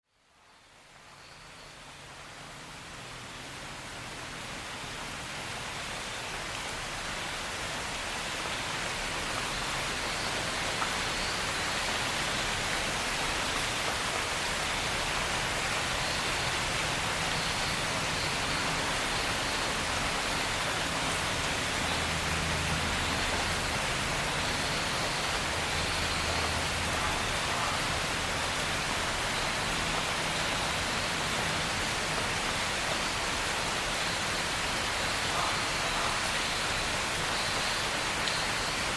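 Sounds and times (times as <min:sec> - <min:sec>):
steady rain falling: 0:00.1 - 0:38.9.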